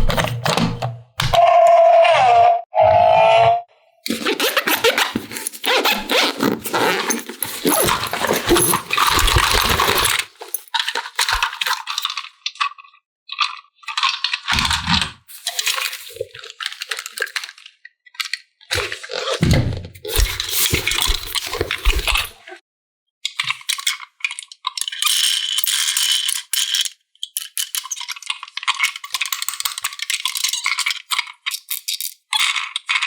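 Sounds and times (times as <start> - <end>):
plastic toy pieces rattling: 4.1 - 12.2, 24.8 - 33.0.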